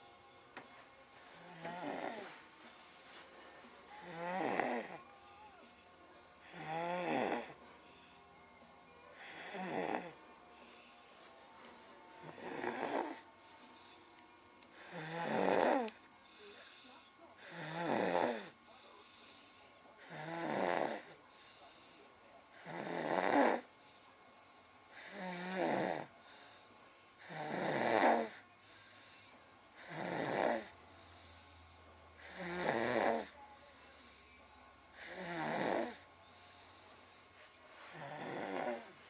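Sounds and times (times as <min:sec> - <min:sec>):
quiet breaths: 0:00.0 - 0:39.0
boy snoring: 0:01.3 - 0:02.4, 0:03.9 - 0:05.6, 0:06.4 - 0:07.6, 0:09.2 - 0:10.8, 0:12.2 - 0:13.3, 0:14.8 - 0:16.6, 0:17.4 - 0:18.5, 0:20.0 - 0:21.2, 0:22.6 - 0:23.7, 0:25.0 - 0:26.1, 0:27.2 - 0:28.4, 0:29.8 - 0:30.7, 0:32.2 - 0:33.4, 0:35.0 - 0:36.0, 0:37.9 - 0:39.0.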